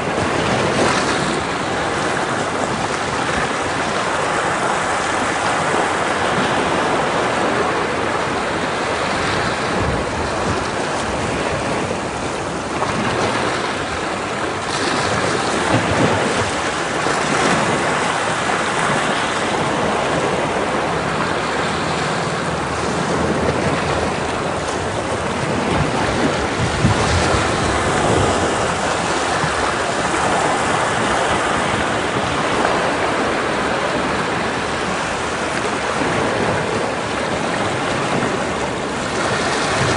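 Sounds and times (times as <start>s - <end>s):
waves breaking against rocks: 0.0s - 39.9s.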